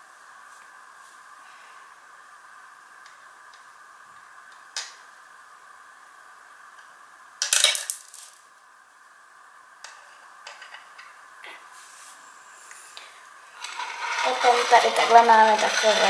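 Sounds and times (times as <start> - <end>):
plastic toy pieces clattering: 7.4 - 8.5, 13.6 - 16.0.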